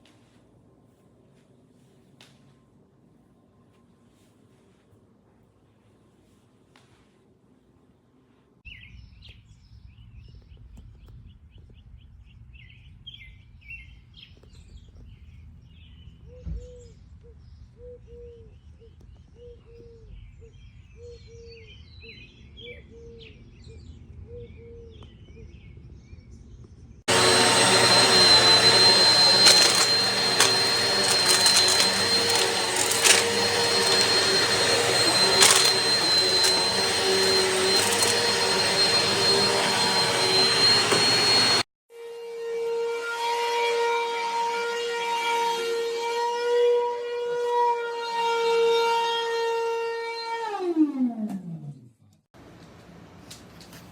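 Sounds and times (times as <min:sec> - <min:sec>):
vacuum cleaner whining: 0:27.1 - 0:41.7.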